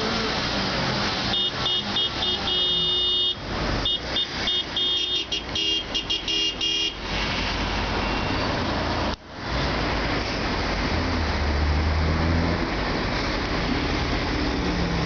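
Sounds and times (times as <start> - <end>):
street traffic noise: 0.0 - 15.0
car horns honking: 1.3 - 7.2.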